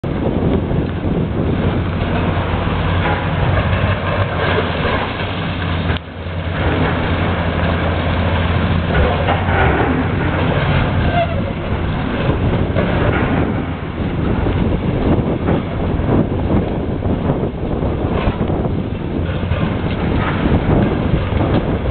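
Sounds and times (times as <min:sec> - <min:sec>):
excavator diesel engine running: 0:00.0 - 0:21.9
rough clattering: 0:01.6 - 0:16.8.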